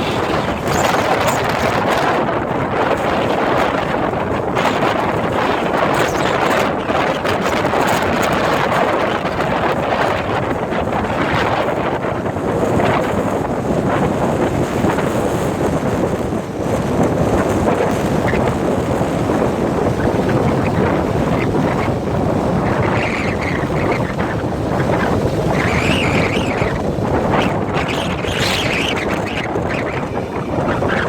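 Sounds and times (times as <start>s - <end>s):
gusting wind buffeting microphone: 0.0s - 31.0s.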